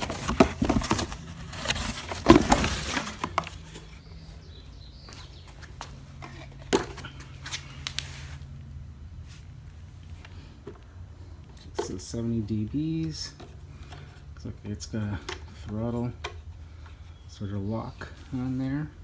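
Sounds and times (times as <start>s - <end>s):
cardboard packaging rustling: 0.0s - 4.0s.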